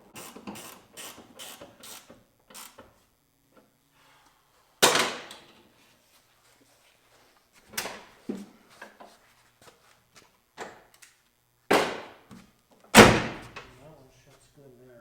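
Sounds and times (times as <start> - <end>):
loud metal bang: 13.0 - 13.6.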